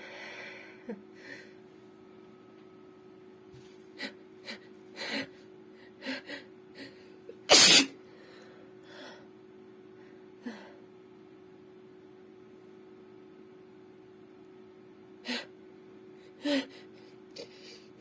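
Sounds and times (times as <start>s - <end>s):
woman sneezing: 7.5s - 8.0s.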